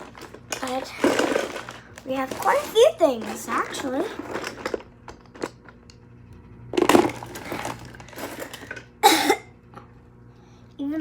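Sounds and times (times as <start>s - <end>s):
rummaging clicks and knocks: 0.0s - 5.8s.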